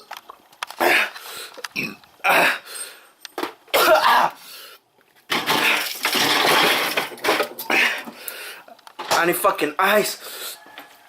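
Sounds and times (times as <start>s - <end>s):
person coughing and clearing throat: 3.7s - 4.4s.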